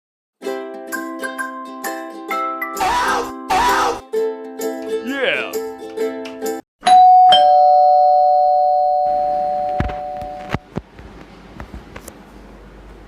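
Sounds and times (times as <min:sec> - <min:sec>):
two-note doorbell chime: 0:06.8 - 0:10.6.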